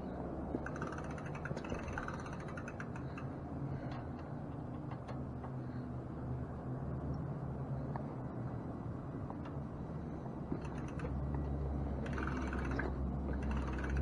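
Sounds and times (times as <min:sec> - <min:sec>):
steady low hum: 0:00.0 - 0:14.0
ticks and clicks from brake work: 0:00.5 - 0:05.7, 0:09.2 - 0:14.0.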